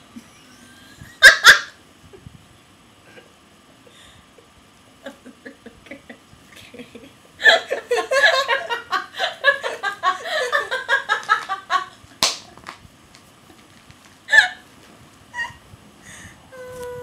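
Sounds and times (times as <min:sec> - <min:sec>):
hearty laughter: 0:05.0 - 0:12.0
sharp slap: 0:12.2 - 0:12.6.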